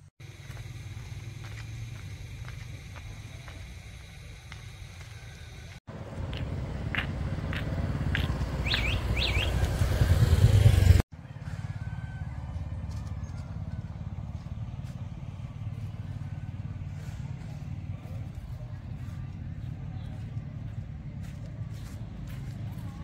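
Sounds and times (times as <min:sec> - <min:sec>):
motorbike engine running: 0:00.0 - 0:23.0.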